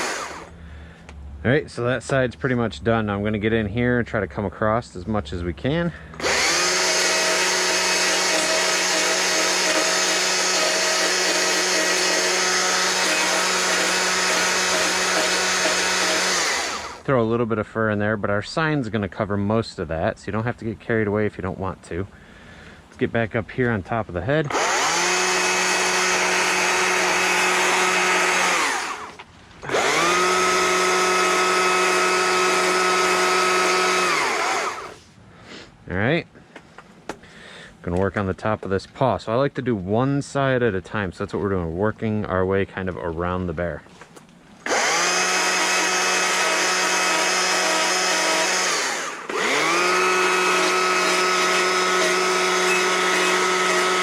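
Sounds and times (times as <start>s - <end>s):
power carving tool cutting wood: 0.0s - 0.5s, 6.2s - 17.0s, 24.4s - 35.0s, 44.6s - 54.0s.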